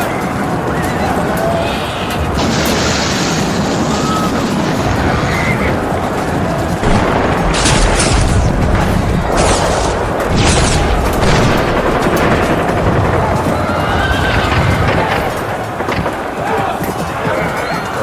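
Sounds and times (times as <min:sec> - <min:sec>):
low booming rumble: 0:02.2 - 0:16.4.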